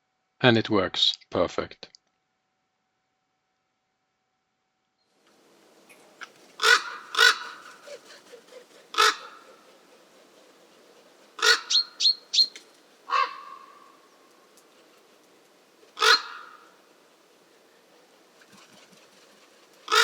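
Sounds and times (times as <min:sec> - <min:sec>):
harsh bird calls: 0:05.9 - 0:15.2, 0:15.8 - 0:18.6, 0:19.4 - 0:20.0.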